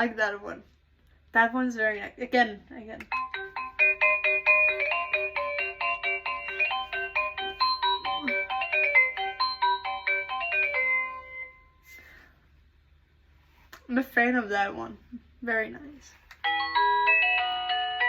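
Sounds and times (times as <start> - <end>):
electronic doorbell chime melody: 3.1 - 11.8, 16.4 - 18.0.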